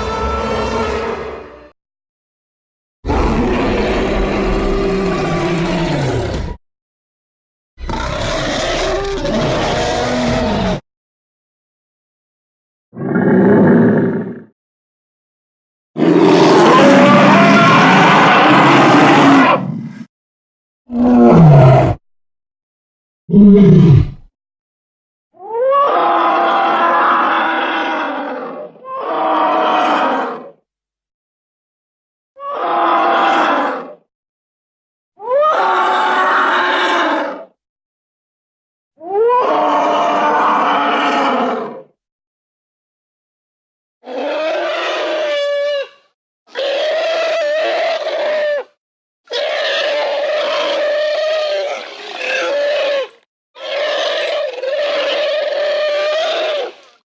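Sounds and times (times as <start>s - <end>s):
monster roaring: 0.0s - 1.7s, 3.1s - 6.6s, 7.8s - 10.8s, 16.0s - 20.1s, 20.9s - 22.0s
monster cries: 16.0s - 20.0s.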